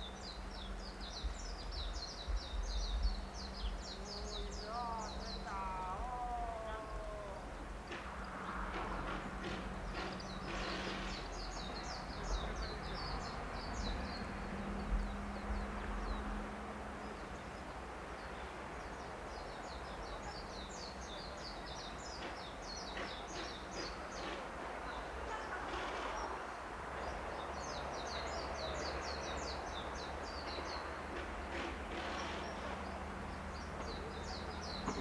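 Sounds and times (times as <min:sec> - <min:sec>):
songbird twittering: 0:00.0 - 0:07.3
low outdoor rumble: 0:00.0 - 0:19.0.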